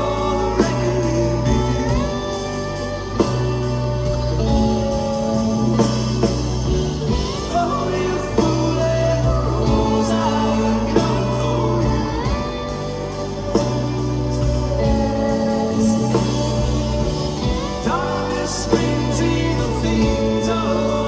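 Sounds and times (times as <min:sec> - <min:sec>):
live rock band: 0:00.0 - 0:21.0
sustained bass notes: 0:00.0 - 0:21.0.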